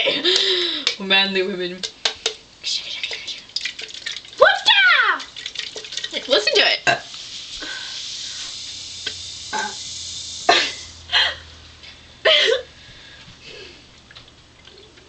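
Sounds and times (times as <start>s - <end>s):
soda fizzing: 1.8s - 11.1s.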